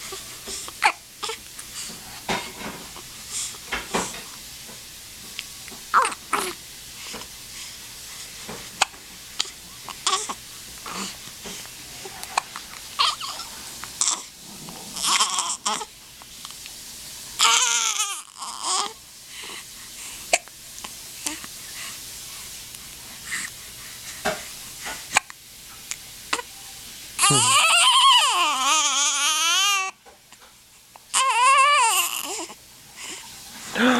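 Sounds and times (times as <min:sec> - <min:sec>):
baby crying: 0:05.9 - 0:06.6, 0:13.0 - 0:14.3, 0:15.0 - 0:15.9, 0:17.4 - 0:19.0, 0:27.2 - 0:30.0, 0:31.1 - 0:32.5
baby fussing: 0:05.9 - 0:06.6, 0:08.8 - 0:11.2, 0:13.0 - 0:14.3, 0:15.0 - 0:15.9, 0:27.2 - 0:29.9, 0:31.1 - 0:33.2
baby hiccuping: 0:05.9 - 0:06.6, 0:13.0 - 0:14.2, 0:27.2 - 0:28.2.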